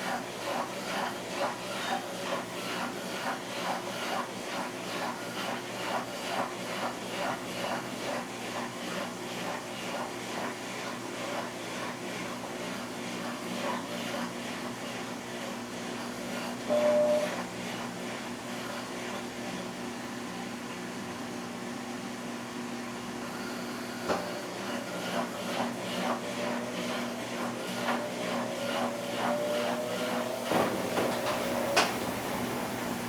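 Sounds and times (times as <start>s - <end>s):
washing machine humming: 0.0s - 33.0s
short beep: 16.7s - 17.4s.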